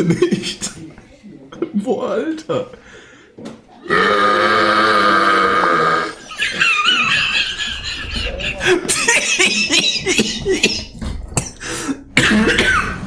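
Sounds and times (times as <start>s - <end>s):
long deep burp: 3.8s - 6.2s
people laughing and snickering: 5.7s - 11.2s.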